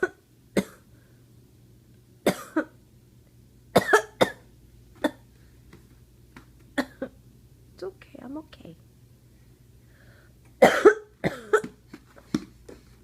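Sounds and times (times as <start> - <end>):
woman coughing: 0.0 - 0.8, 2.3 - 2.8, 3.8 - 4.4, 6.8 - 7.2, 10.6 - 11.8.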